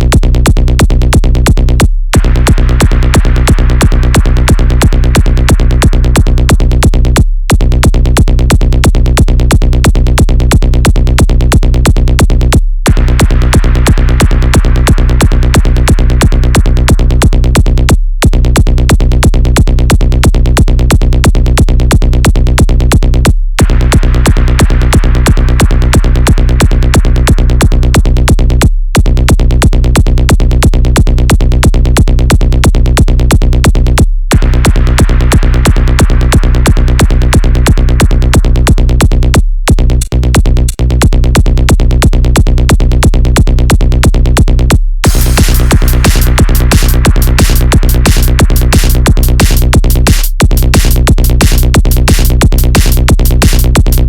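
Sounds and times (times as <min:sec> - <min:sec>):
techno dance music: 0:02.2 - 0:06.9, 0:12.9 - 0:17.6, 0:23.6 - 0:28.1, 0:34.3 - 0:39.1, 0:45.0 - 0:54.0.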